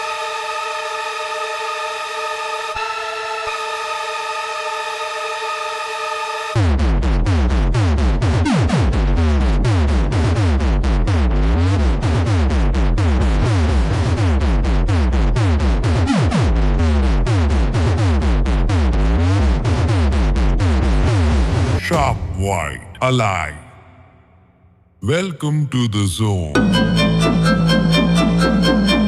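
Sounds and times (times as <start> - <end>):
bass-boosted electronic dance music: 9.0 - 20.5.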